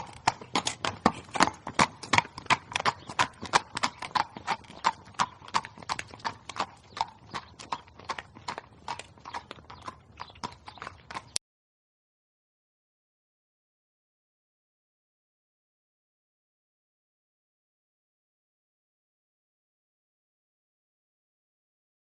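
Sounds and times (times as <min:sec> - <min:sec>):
horse hooves clip-clopping: 0:00.0 - 0:11.4.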